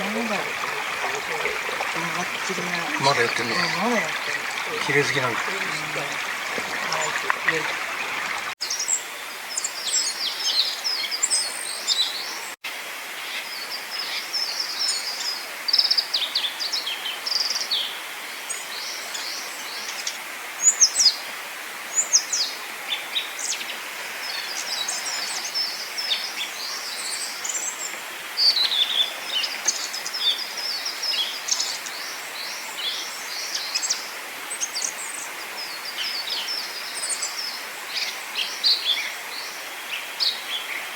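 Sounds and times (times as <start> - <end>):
songbirds chirping and trilling: 0.0 - 12.5.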